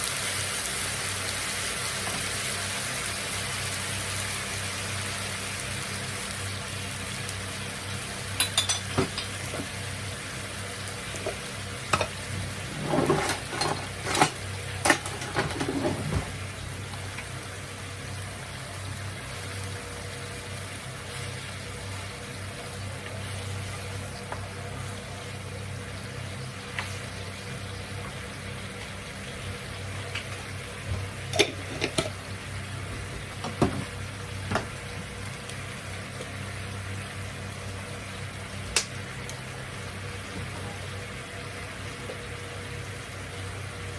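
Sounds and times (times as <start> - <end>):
food sizzling in a frying pan: 0.0 - 43.9
utensils clattering against pan: 8.4 - 9.8, 11.2 - 16.4, 31.3 - 32.2.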